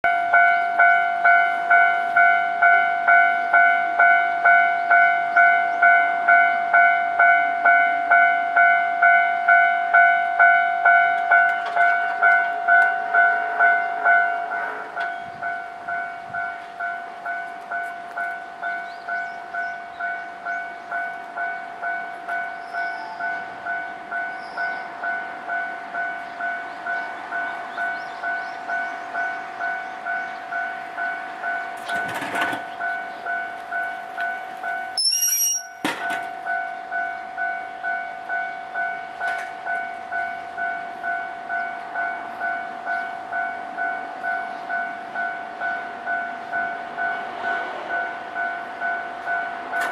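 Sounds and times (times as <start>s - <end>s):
level crossing warning bell: 0.0s - 49.9s
train passing: 0.1s - 49.9s
short high-pitched tone: 35.0s - 35.8s.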